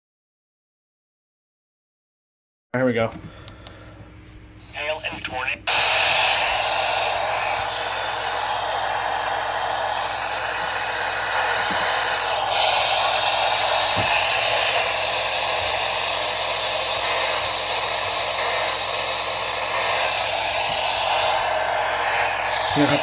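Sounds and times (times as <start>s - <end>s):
radio static hiss: 4.6s - 23.0s.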